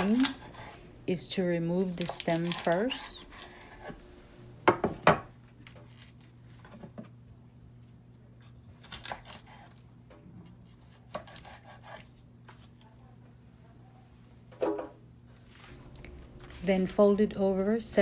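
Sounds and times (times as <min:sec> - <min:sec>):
knife cutting leaves: 0:00.0 - 0:00.8, 0:01.6 - 0:03.9, 0:08.8 - 0:09.8
steady low hum: 0:00.0 - 0:08.8, 0:13.4 - 0:18.0.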